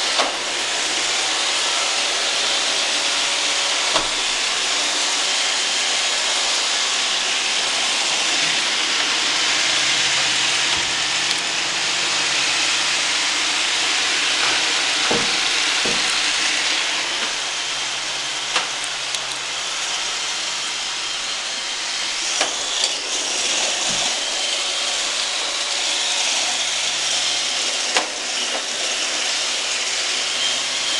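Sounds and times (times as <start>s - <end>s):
robot vacuum cleaner running: 0.0s - 30.9s.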